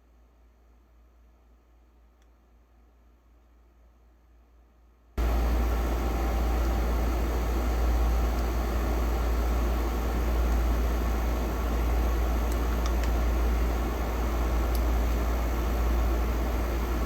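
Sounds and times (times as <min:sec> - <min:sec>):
low machine hum: 0:05.2 - 0:17.0.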